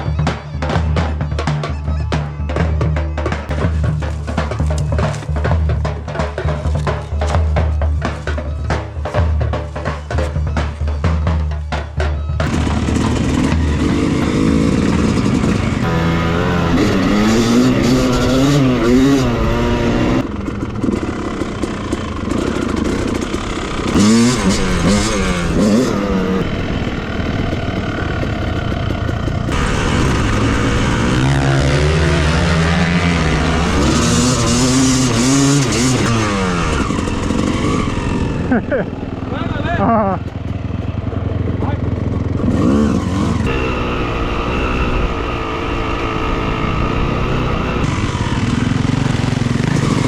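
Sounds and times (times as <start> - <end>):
motocross engine revving: 12.0 - 50.0.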